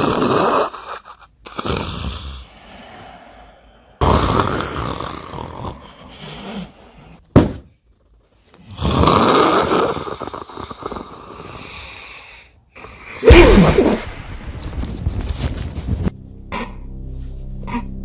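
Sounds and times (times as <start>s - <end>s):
person snoring: 0.0s - 7.2s, 8.7s - 14.0s.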